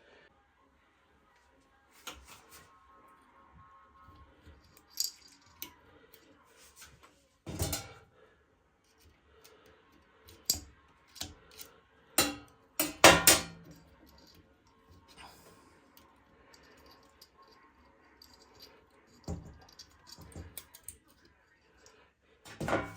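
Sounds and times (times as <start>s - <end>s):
parts clattering: 6.6s - 8.0s, 10.3s - 14.4s, 18.2s - 21.1s, 22.5s - 22.9s
clicks and knocks of small parts: 10.3s - 14.4s, 16.0s - 21.4s.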